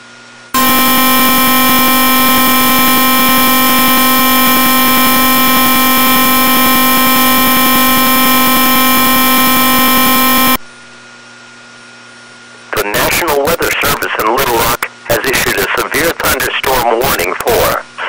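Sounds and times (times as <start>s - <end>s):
buzzy electronic alarm tone: 0.6s - 10.6s.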